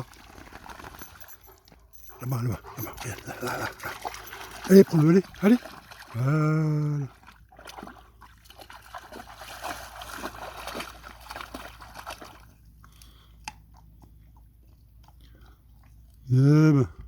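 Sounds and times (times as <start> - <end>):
water splashing: 0.0 - 12.6.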